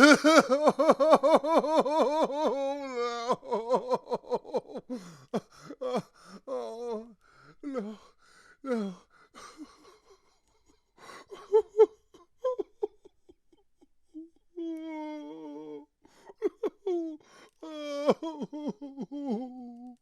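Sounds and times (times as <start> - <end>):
man moaning: 0.0 - 1.1
man crying out loudly: 0.0 - 3.6
man crying and sobbing: 0.0 - 10.0, 16.4 - 19.9.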